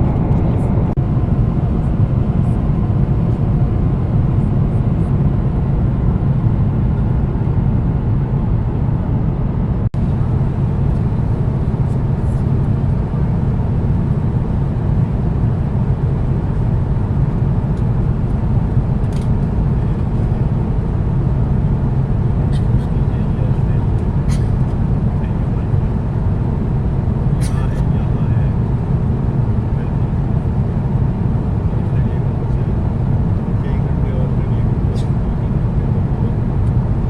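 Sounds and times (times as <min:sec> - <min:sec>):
airplane cabin engine noise: 0:00.0 - 0:37.0.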